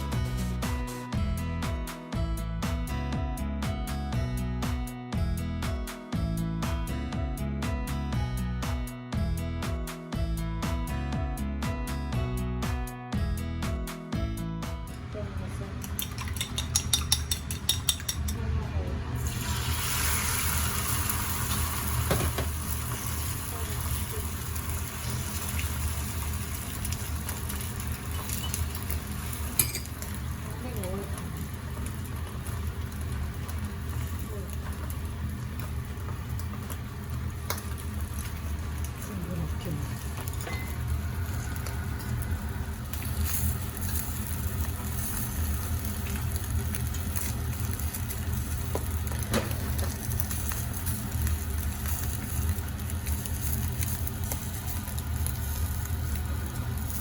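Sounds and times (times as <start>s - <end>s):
food sizzling in a frying pan: 15.9s - 57.0s
steady low hum: 32.7s - 57.0s
low hum: 36.4s - 44.5s.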